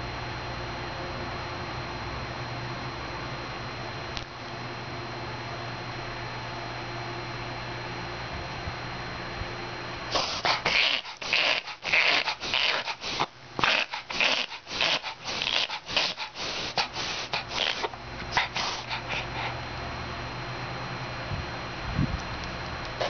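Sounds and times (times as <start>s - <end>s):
dog reverse sneezing: 10.1s - 19.4s.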